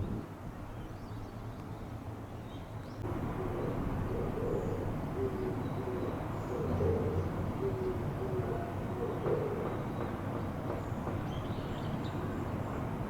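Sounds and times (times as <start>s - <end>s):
dove cooing: 3.3s - 9.9s.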